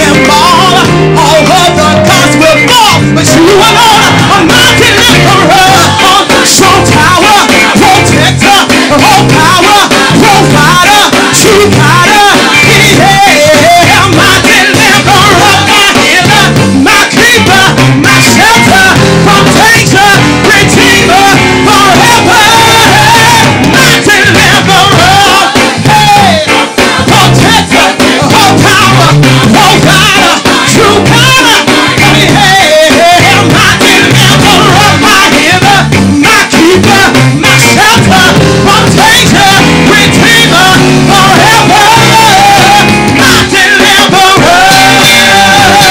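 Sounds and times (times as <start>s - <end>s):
band playing steady beat: 0.0s - 45.9s
voices singing: 0.0s - 45.9s.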